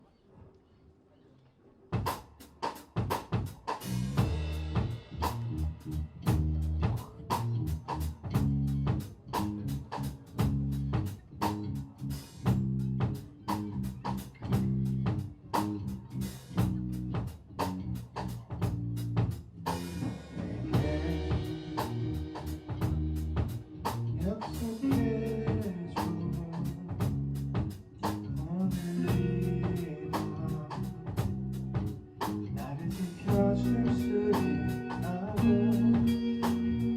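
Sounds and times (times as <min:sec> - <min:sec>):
distorted guitars: 0:02.0 - 0:36.9
drum kit beat: 0:02.0 - 0:36.9
bass guitar: 0:03.0 - 0:36.9.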